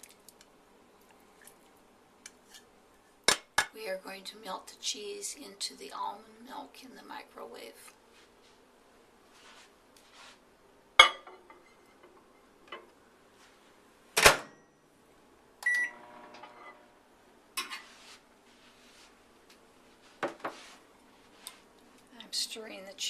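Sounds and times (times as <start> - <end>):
microwave running hum: 10.6 - 17.8
microwave beeps: 15.6 - 16.8.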